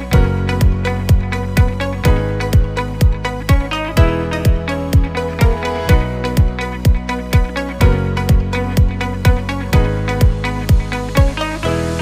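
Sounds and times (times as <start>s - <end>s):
bass drum beat: 0.0s - 11.8s
plucked guitar-like notes: 0.0s - 12.0s.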